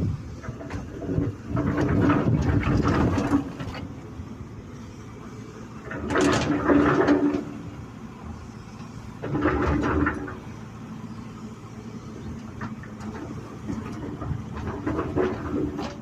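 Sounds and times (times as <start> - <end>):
excavator engine and hydraulics: 0.0 - 16.0
rattling and scraping: 0.3 - 4.0, 5.8 - 7.8, 9.2 - 10.6, 12.2 - 16.0.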